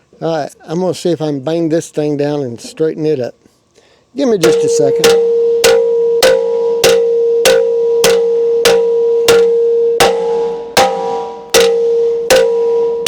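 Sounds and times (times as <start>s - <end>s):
hammer striking steel: 4.4s - 13.0s.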